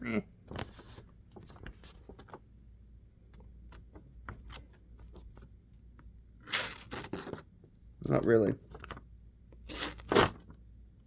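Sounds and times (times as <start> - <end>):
paper rustling and crinkling: 0.5 - 2.4.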